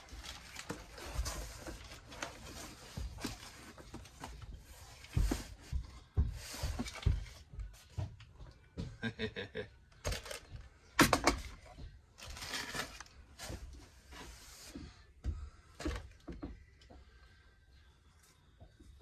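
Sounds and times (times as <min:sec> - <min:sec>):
packing material rustling: 0:00.0 - 0:05.5, 0:12.2 - 0:13.8
parts knocking and clattering: 0:10.0 - 0:13.8.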